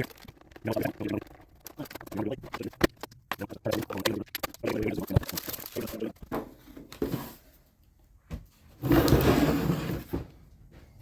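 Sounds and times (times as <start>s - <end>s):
knocks and clatters of parts: 0.0s - 7.1s.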